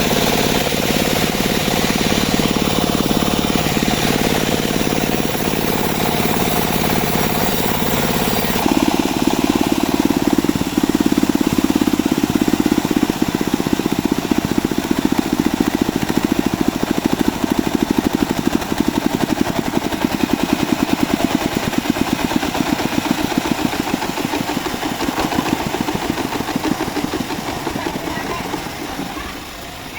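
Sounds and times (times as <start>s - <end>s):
small engine pulsing: 0.0s - 29.9s.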